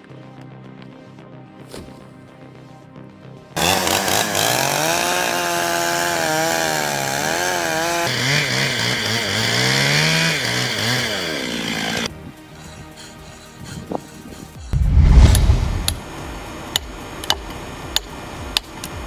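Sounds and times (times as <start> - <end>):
chainsaw running at high revs: 3.6 - 12.1.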